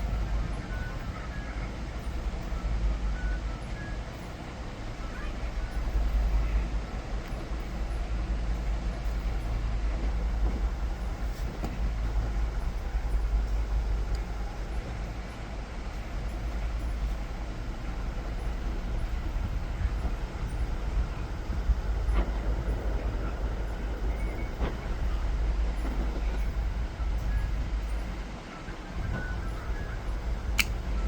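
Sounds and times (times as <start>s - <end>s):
haze of noise: 0.0s - 31.0s
faint ticks: 5.7s - 28.2s, 29.0s - 31.0s.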